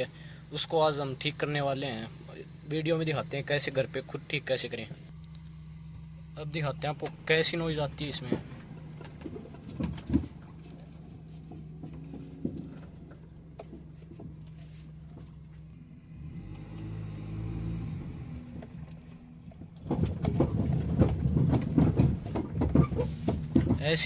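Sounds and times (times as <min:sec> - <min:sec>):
car engine humming: 0:00.0 - 0:24.0
loud irregular knocking and rattling: 0:07.0 - 0:15.6, 0:18.6 - 0:24.0.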